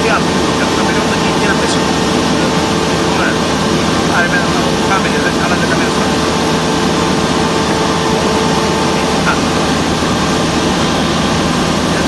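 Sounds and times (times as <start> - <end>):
faint steady hum: 0.0 - 12.0
propeller plane engine drone: 0.0 - 12.0.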